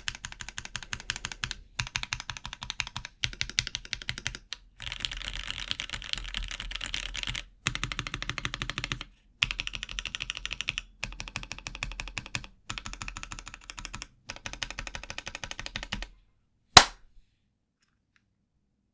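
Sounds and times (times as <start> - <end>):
mechanical keyboard typing: 0.0 - 16.1.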